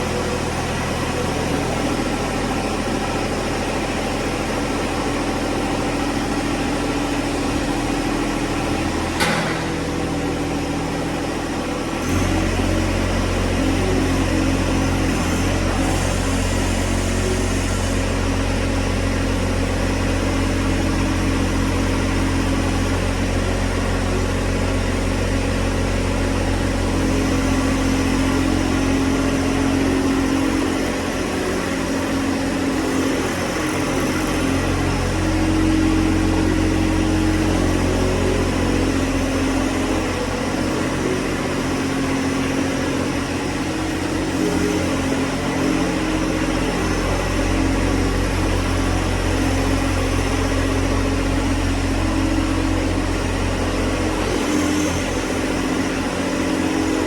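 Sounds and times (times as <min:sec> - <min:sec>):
diesel tractor engine running: 0:00.0 - 0:57.0
sharp clunk: 0:09.2 - 0:10.0.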